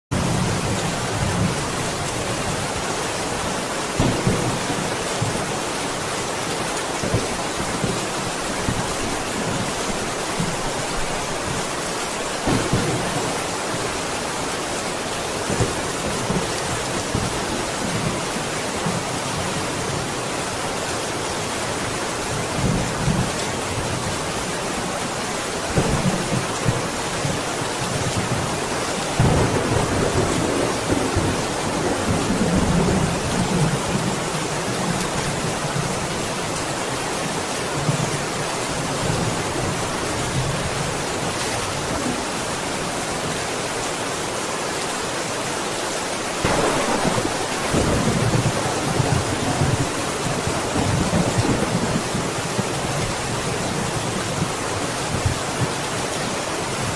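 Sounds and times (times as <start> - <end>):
heavy rain hissing: 0.2 - 56.9
thunder rumbling: 12.4 - 14.1, 29.1 - 34.1, 46.4 - 53.0.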